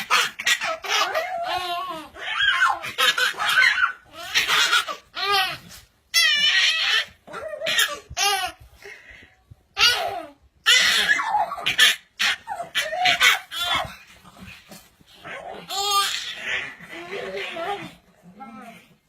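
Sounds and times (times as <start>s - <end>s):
baby laughing: 0.0s - 8.6s, 9.8s - 13.9s.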